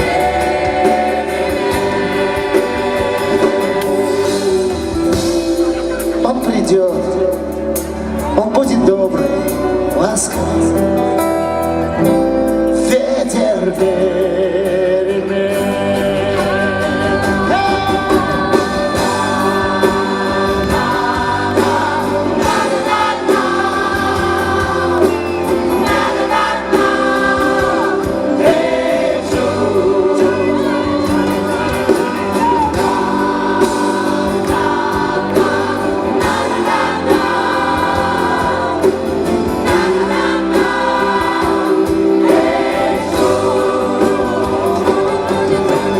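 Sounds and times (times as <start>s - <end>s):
voices singing together: 0.0s - 6.2s, 12.8s - 45.9s
live band music: 0.0s - 45.9s.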